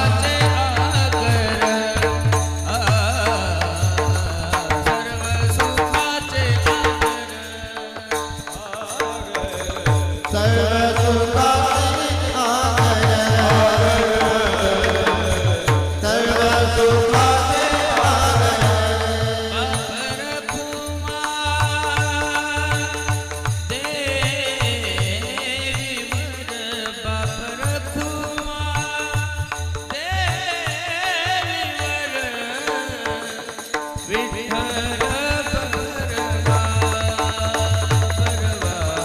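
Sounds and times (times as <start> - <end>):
person singing ornamented melody: 5.2 - 22.7.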